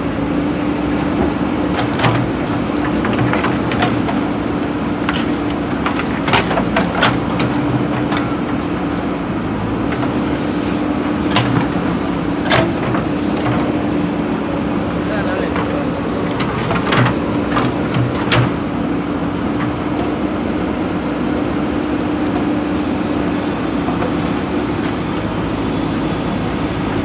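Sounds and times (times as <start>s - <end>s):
diesel engine droning: 0.0s - 27.0s
metal clanks and knocks: 0.9s - 4.4s, 5.0s - 8.7s, 11.2s - 13.8s, 15.0s - 18.7s.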